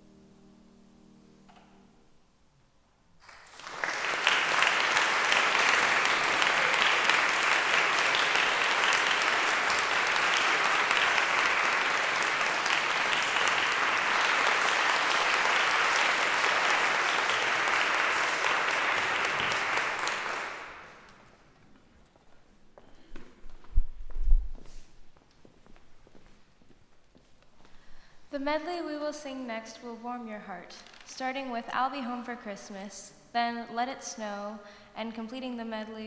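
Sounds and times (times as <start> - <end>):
audience applauding: 3.2 - 21.2.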